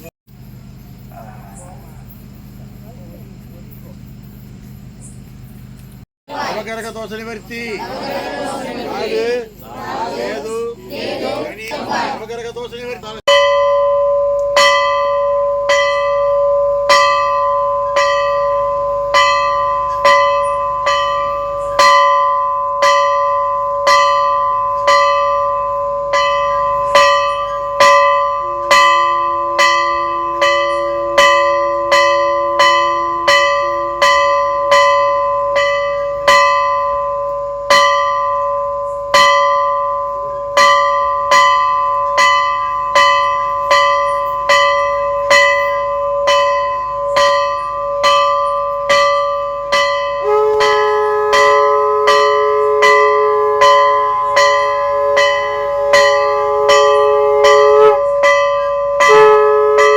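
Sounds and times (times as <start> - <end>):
temple bell ringing: 13.3 - 59.9.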